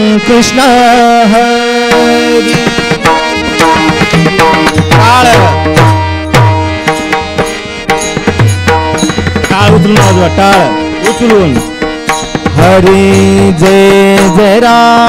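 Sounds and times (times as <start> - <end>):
harmonium chord: 0.0 - 15.0
hand drum playing: 1.8 - 15.0
hand cymbals clashing: 6.4 - 12.5.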